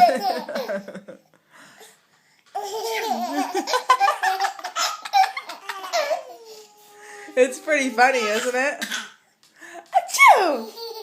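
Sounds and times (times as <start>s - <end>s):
baby giggling: 0.0s - 1.1s, 2.5s - 6.8s, 10.6s - 11.0s.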